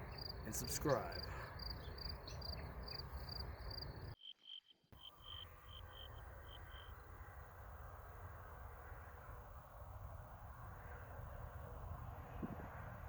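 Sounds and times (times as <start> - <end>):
crickets chirping: 0.0 - 8.6.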